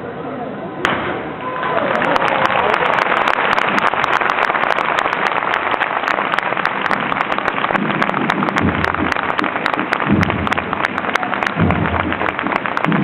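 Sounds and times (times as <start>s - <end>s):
crackling recording hiss: 0.0s - 13.0s
low muffled sounds: 6.8s - 13.0s.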